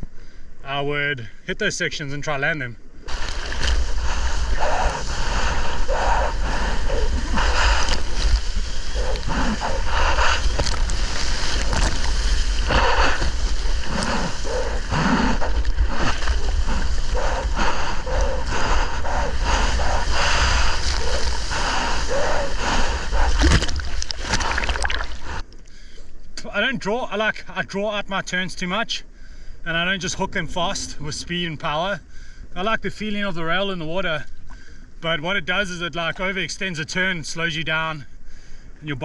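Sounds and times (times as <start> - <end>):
seawater splashing: 3.0 - 25.4
wind rumble on microphone: 3.0 - 25.5.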